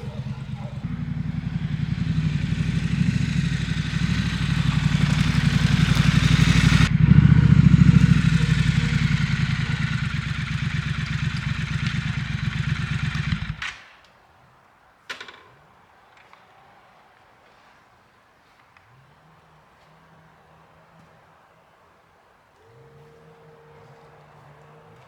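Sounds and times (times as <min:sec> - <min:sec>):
motorcycle engine pulsing exhaust: 0:00.0 - 0:13.8.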